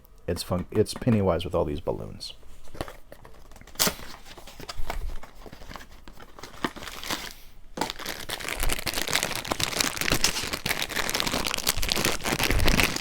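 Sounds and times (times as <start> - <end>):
packaging crinkling: 2.6 - 13.0.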